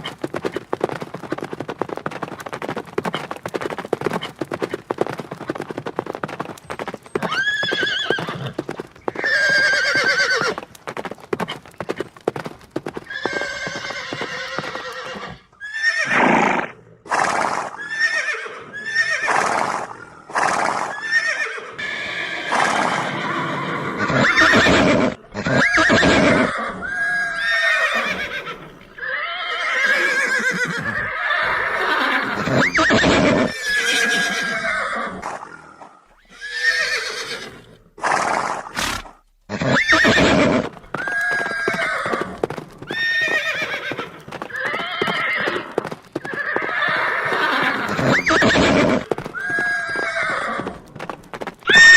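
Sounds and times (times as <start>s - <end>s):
horse hooves clip-clopping: 0.0s - 15.5s, 38.8s - 51.9s
horses whinnying and neighing: 6.6s - 10.7s, 11.4s - 51.9s.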